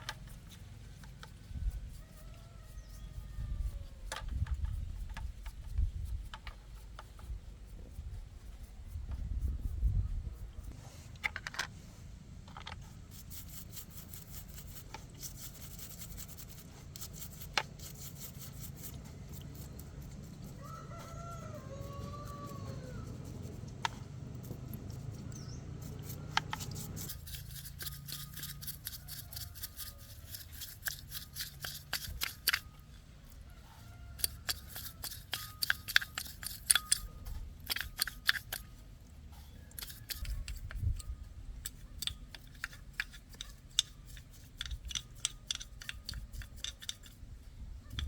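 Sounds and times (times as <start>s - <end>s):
sharp metallic clicks of hand tools: 22.3s - 33.0s, 34.2s - 38.8s, 39.7s - 48.0s.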